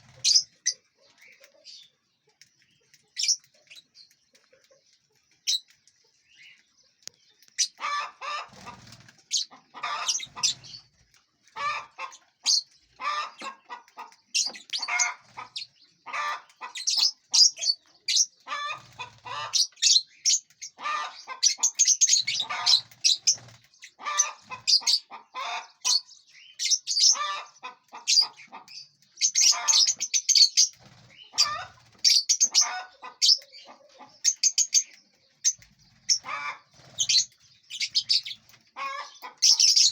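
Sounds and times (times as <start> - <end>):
lovebirds chirping: 0.0 - 39.9
wings flapping: 8.4 - 9.3, 18.6 - 19.6, 22.2 - 24.7, 30.6 - 32.1.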